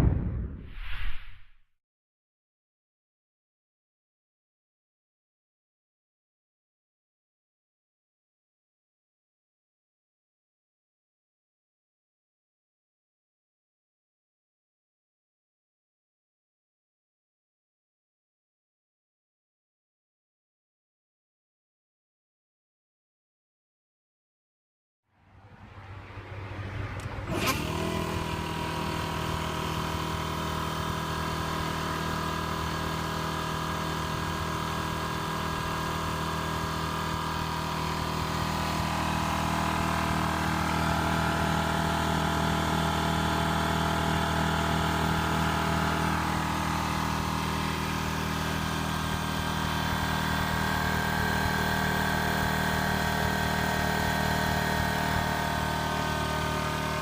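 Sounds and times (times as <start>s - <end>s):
air compressor running: 27.0s - 57.0s.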